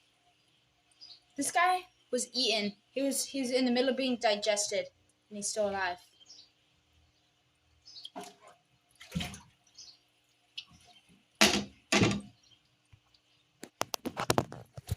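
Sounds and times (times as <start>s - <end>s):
water splashing: 8.0s - 12.3s.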